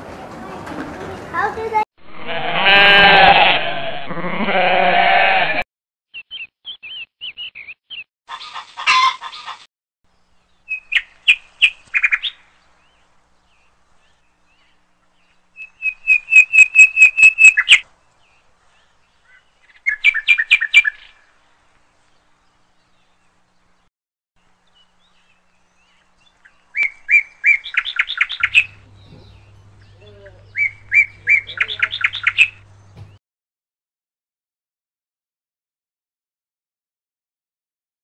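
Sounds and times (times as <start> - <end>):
goat bleating: 2.2 - 5.6.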